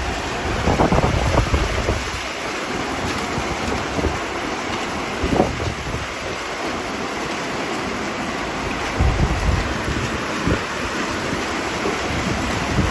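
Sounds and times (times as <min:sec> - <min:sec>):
wind buffeting microphone: 0:00.0 - 0:06.5, 0:08.5 - 0:12.9
heavy rain: 0:00.0 - 0:12.9.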